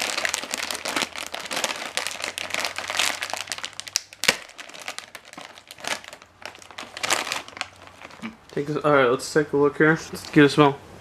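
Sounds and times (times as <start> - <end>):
sharp crack: 0.0 - 6.2
plastic chip bag crinkling: 0.0 - 8.9.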